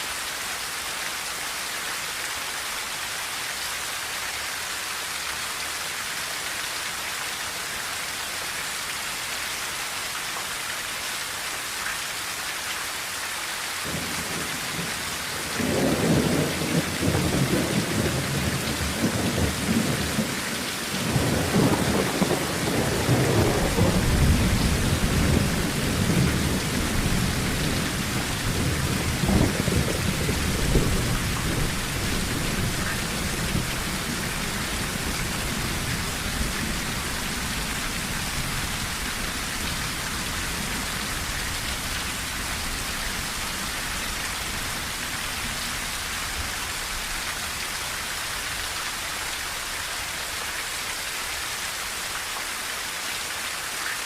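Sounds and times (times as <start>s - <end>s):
rain on a tin roof: 0.0s - 54.0s
rolling thunder: 21.0s - 41.3s.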